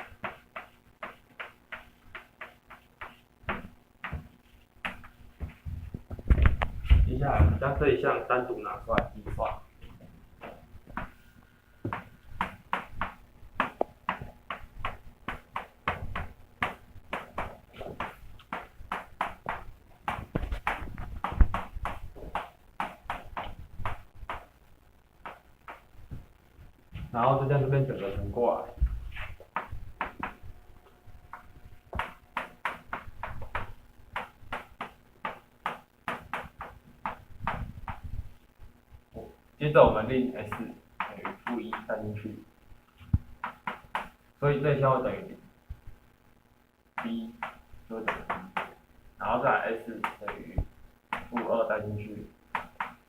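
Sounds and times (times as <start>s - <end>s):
writing taps and scratches: 0.0s - 7.0s, 9.8s - 11.2s, 11.8s - 24.5s, 25.2s - 26.3s, 28.8s - 30.5s, 31.3s - 38.2s, 39.2s - 42.0s, 43.0s - 44.2s, 47.0s - 48.8s, 49.9s - 51.6s, 52.5s - 53.0s.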